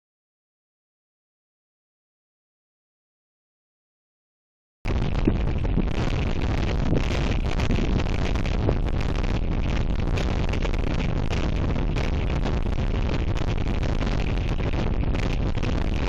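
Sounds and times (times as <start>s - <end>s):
gusty wind on microphone: 4.9s - 16.0s.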